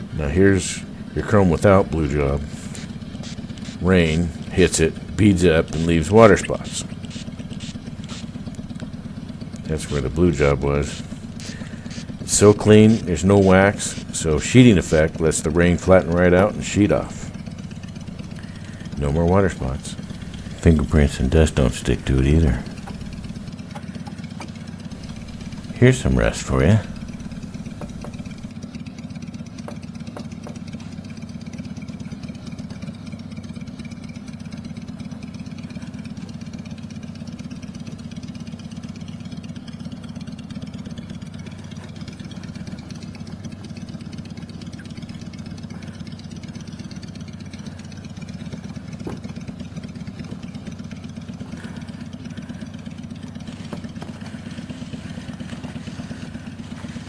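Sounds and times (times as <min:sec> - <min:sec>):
orbital sander humming: 0:01.9 - 0:28.6, 0:47.6 - 0:57.0.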